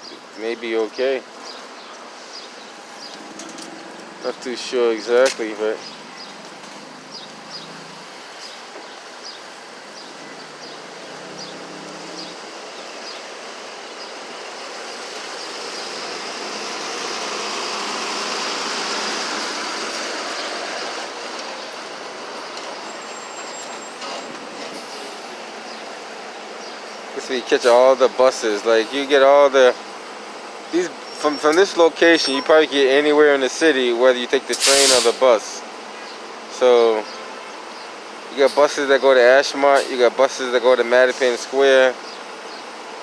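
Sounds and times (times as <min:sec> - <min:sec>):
street traffic: 0:00.0 - 0:43.0
large vehicle passing: 0:10.2 - 0:12.8.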